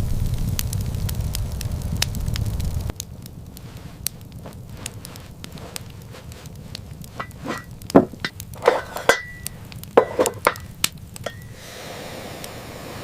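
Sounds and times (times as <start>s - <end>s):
faint hiss: 0.0s - 13.0s
hard objects knocking and clinking: 7.1s - 11.4s.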